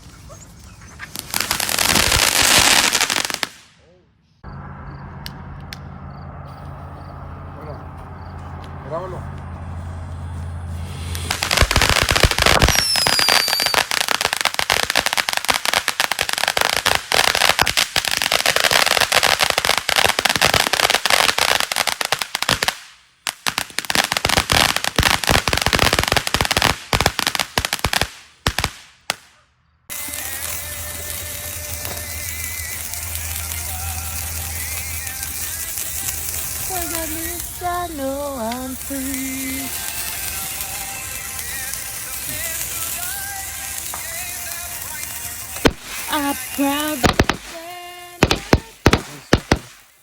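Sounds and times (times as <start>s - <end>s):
firecrackers popping: 0.0s - 3.9s, 10.7s - 50.0s.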